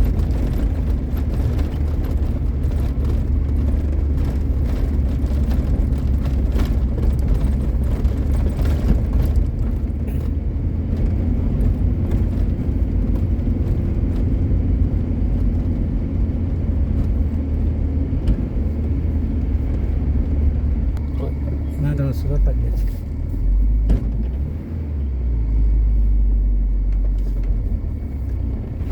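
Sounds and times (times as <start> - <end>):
knocks and rattles: 0.0 - 21.4
car engine and road rumble: 0.0 - 28.9.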